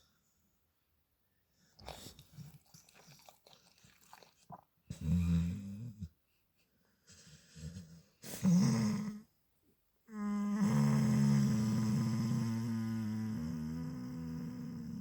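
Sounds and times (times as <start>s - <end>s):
pet snoring: 10.4s - 15.0s.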